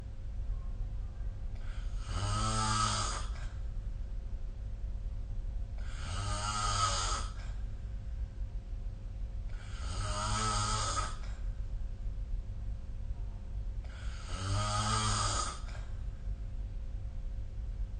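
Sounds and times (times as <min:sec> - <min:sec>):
steady low hum: 0:00.0 - 0:17.9
person snoring: 0:01.6 - 0:03.6, 0:05.8 - 0:07.6, 0:09.5 - 0:11.4, 0:13.9 - 0:15.9.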